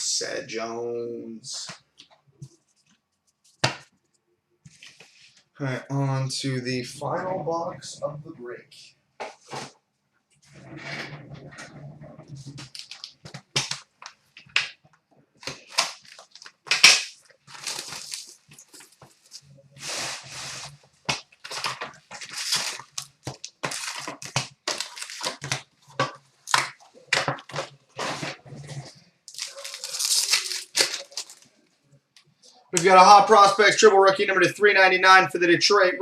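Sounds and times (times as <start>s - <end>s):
packaging crinkling and tearing: 12.6s - 13.9s, 15.4s - 31.6s.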